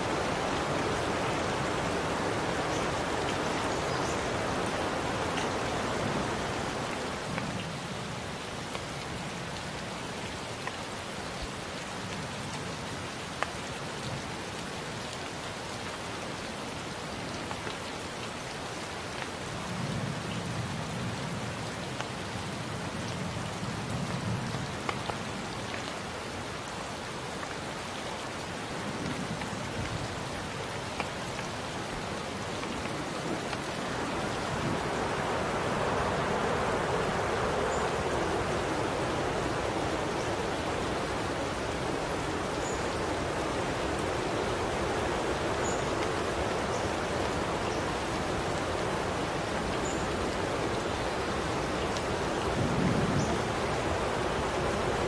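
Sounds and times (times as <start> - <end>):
steady rain falling: 0.0 - 55.0
raindrop ticks: 24.1 - 26.0.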